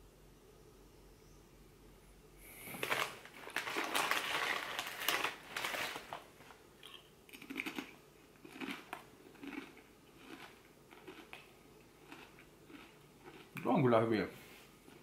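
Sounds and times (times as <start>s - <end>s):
crisp bag crinkling: 2.7s - 6.5s
crisps crunching: 2.7s - 13.6s.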